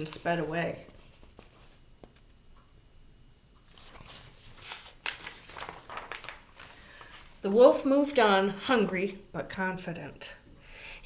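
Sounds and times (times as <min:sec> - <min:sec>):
book page turning: 0:00.1 - 0:02.2, 0:03.6 - 0:07.5.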